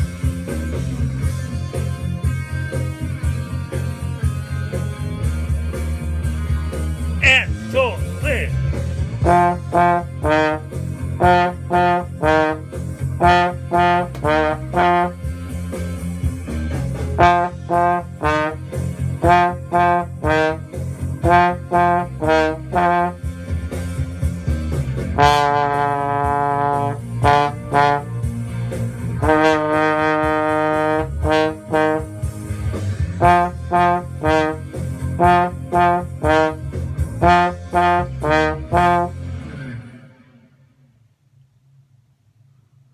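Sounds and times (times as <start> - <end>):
trombone playing lively tune: 7.2 - 8.6, 9.2 - 15.3, 17.2 - 23.3, 25.2 - 28.5, 29.2 - 39.3
low accompaniment: 13.2 - 15.2.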